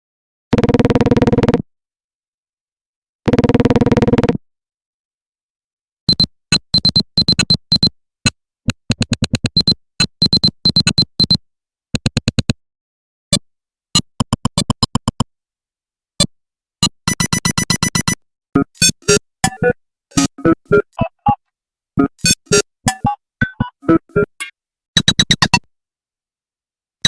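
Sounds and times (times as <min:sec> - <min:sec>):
synthesized ringtone blips: 0:18.6 - 0:21.4, 0:22.0 - 0:24.5.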